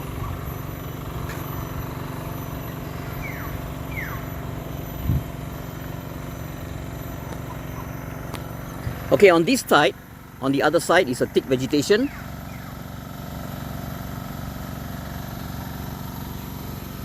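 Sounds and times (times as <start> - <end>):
low rumble of road traffic: 0.0 - 17.0
bird whistling: 2.2 - 4.4, 7.0 - 8.9, 11.9 - 12.8.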